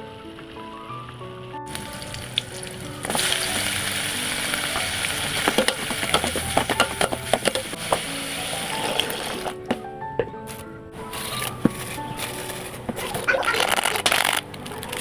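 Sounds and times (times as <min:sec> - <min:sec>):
food sizzling in a pan: 0:01.7 - 0:09.6
utensil knocking against pan: 0:05.4 - 0:08.0.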